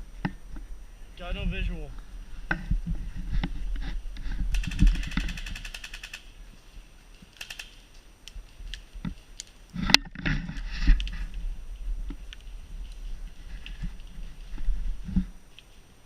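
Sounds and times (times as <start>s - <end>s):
airsoft rifle full-auto burst: 4.5s - 6.3s.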